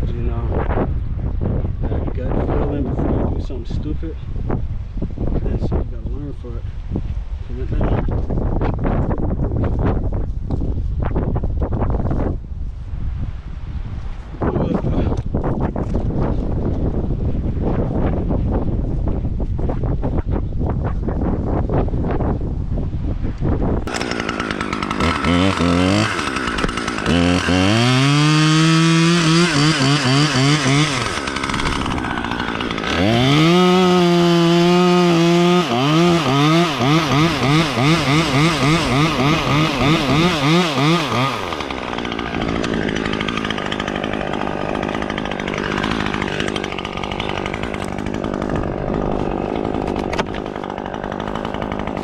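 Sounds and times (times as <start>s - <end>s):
wind on microphone: 0.0s - 23.9s
chainsaw revving and cutting: 23.8s - 52.0s.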